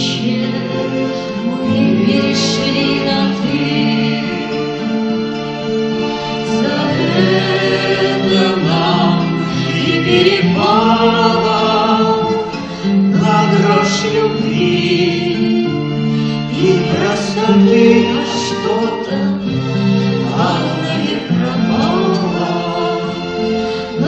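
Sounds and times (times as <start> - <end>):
guitar accompaniment: 0.0 - 24.0
voices singing slow song: 0.0 - 24.0.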